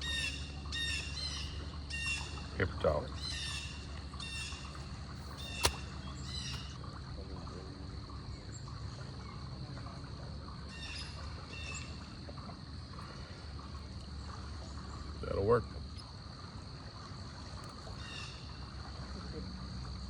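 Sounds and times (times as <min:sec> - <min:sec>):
birds calling: 0:00.0 - 0:06.8
faint high insect-like drone: 0:00.0 - 0:20.0
outdoor background noise: 0:00.0 - 0:20.0
sharp click: 0:05.4 - 0:05.8.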